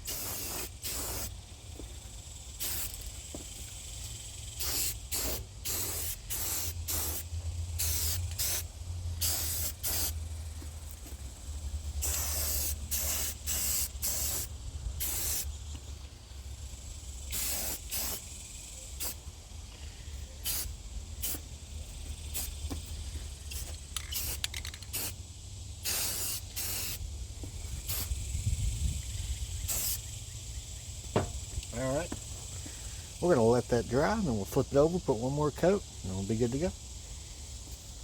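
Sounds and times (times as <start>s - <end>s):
spray paint can hissing: 0.0s - 10.2s, 11.4s - 15.6s, 16.8s - 19.3s, 20.4s - 22.8s, 23.4s - 25.2s, 25.8s - 28.4s, 29.6s - 30.2s
low steady rumble: 7.2s - 12.1s.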